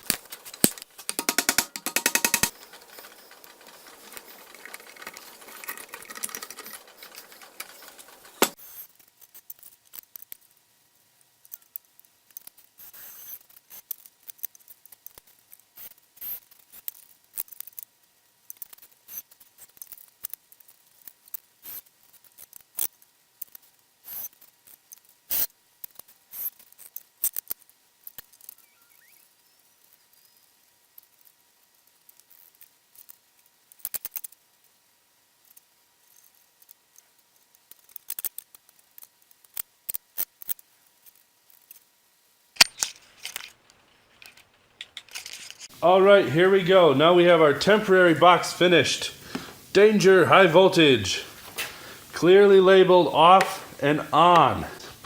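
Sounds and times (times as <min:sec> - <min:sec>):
sharp click: 0:00.0 - 0:02.6
light clicks and taps of tools: 0:00.0 - 0:08.6
rapid rattle: 0:00.0 - 0:08.6.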